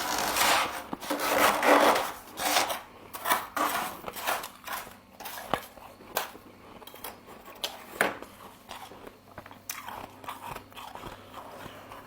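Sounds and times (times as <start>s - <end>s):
frost crunching and scraping: 0.0s - 6.4s.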